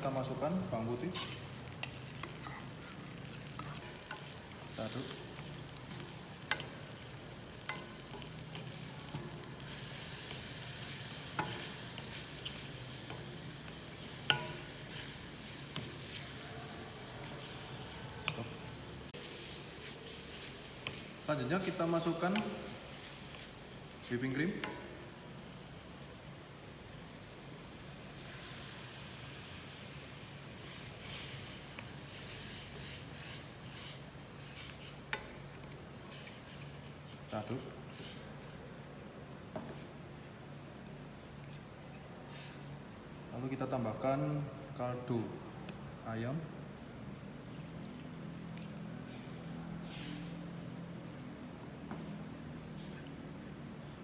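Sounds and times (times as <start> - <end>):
onion and garlic sizzling in oil: 0.0 - 38.7, 47.4 - 51.2.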